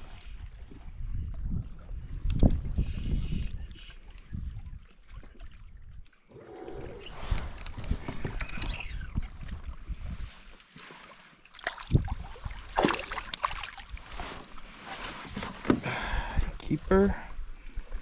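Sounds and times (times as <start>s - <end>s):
water splashing: 11.0s - 14.9s.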